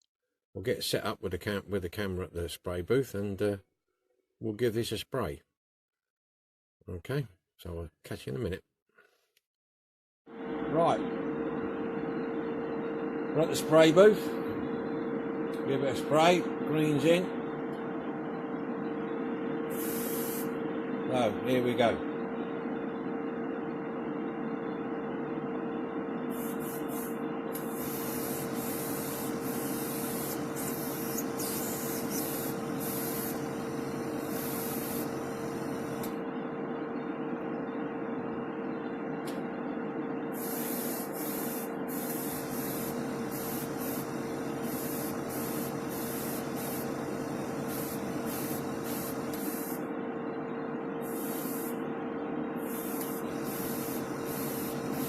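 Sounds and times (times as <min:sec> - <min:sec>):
extractor fan humming: 0:10.5 - 0:36.8, 0:40.4 - 0:50.2, 0:52.6 - 0:55.0
airbrush hissing: 0:19.7 - 0:20.6, 0:26.3 - 0:36.0, 0:40.3 - 0:49.8, 0:51.0 - 0:51.8, 0:52.6 - 0:55.0.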